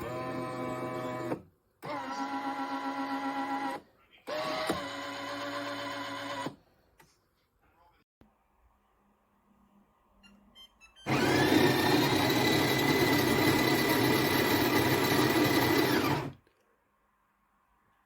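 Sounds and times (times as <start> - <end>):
coffee machine motor whine: 0.0 - 6.6, 11.1 - 16.4.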